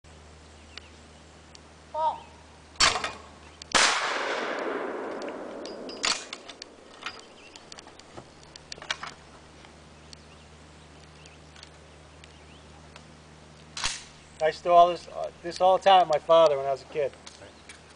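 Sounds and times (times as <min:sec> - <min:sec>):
sharp snap: 0:02.8 - 0:06.8, 0:13.7 - 0:14.2
shotgun blast with echo: 0:03.7 - 0:06.5
metallic gun clicks and knocks: 0:05.1 - 0:09.2.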